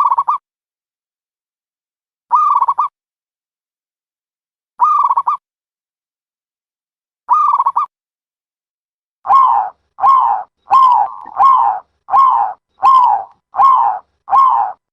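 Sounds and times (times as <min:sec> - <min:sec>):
dove cooing: 0:09.3 - 0:14.9.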